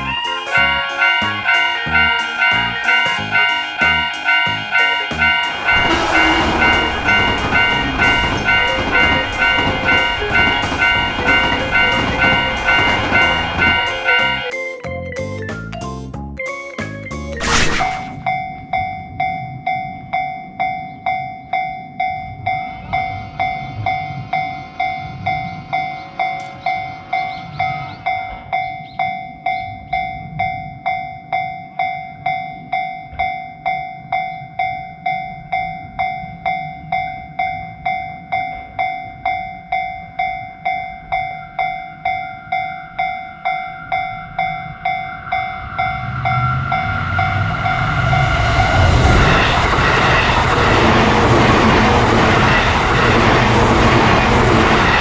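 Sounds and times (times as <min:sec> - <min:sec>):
approaching train rushing: 0:00.0 - 0:14.5, 0:41.1 - 0:55.0
railroad crossing bell ringing: 0:00.0 - 0:15.2, 0:18.2 - 0:55.0.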